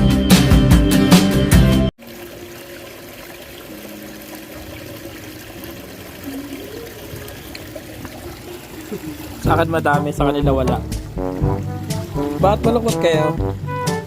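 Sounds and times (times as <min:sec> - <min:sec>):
rock background music: 0:00.0 - 0:01.9, 0:09.5 - 0:14.0
running water: 0:02.0 - 0:14.0.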